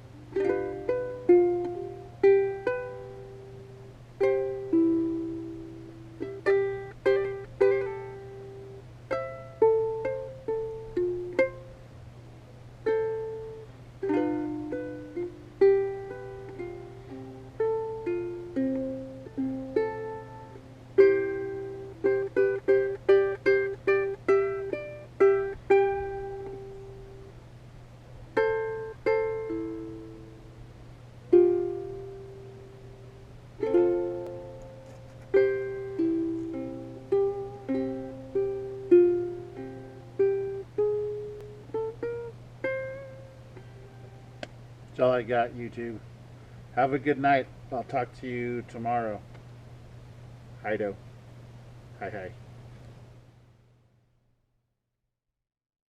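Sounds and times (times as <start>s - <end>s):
plucked string instrument melody: 0.0s - 11.9s, 12.8s - 27.4s, 28.3s - 45.9s
steady low hum: 0.0s - 54.6s.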